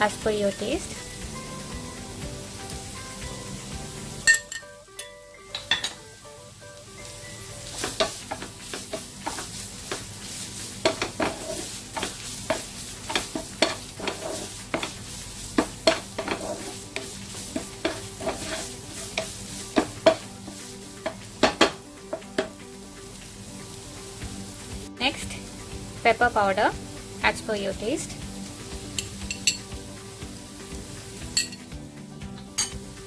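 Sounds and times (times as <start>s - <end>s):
food sizzling in a pan: 0.0s - 33.0s
utensil scraping a pan: 7.7s - 22.5s.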